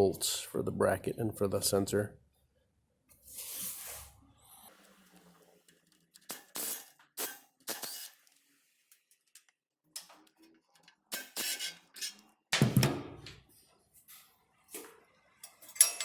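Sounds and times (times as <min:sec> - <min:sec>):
metal clank and thud: 0:12.6 - 0:13.4
hand tools clinking on metal: 0:15.4 - 0:16.0.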